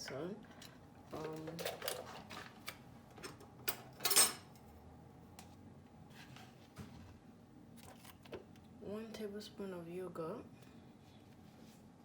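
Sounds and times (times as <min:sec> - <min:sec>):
utensils and containers clinking: 0:00.5 - 0:04.5.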